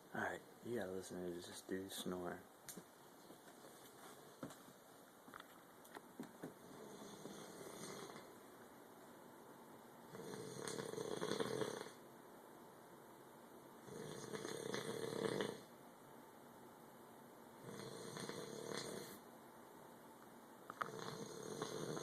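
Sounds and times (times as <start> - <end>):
man snoring loudly: 6.6 - 8.3, 10.1 - 12.0, 13.8 - 15.7, 17.6 - 19.2, 20.8 - 22.0.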